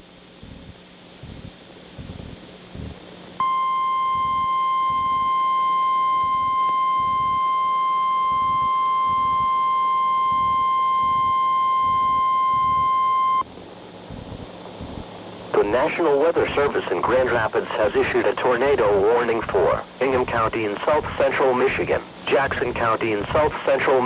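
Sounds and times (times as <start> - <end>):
steady warning alarm tone: 3.4 - 13.5.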